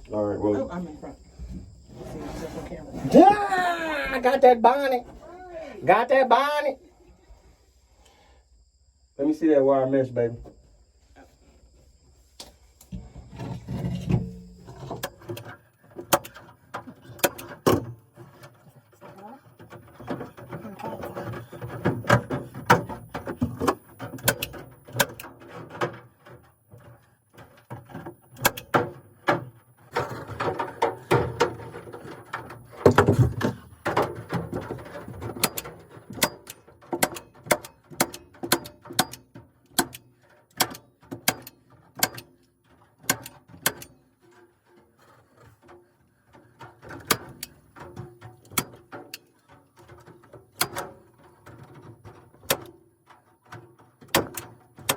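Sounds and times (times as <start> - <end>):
tool clicks and knocks on wire mesh: 30.4 - 44.8, 46.8 - 54.9.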